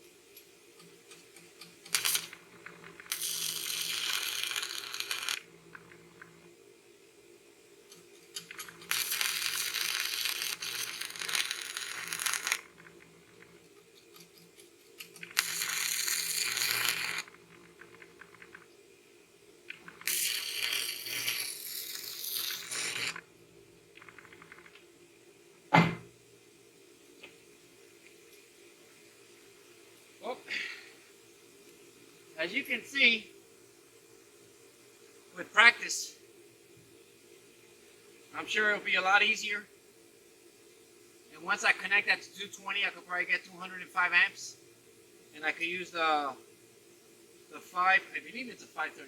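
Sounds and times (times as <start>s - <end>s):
welding arc crackling and hissing: 0.0s - 25.7s, 26.4s - 49.0s
sharp knock: 25.7s - 26.1s.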